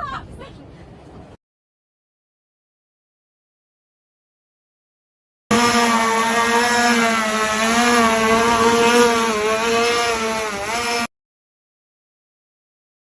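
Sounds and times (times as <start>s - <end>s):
small engine buzzing: 5.5s - 11.1s.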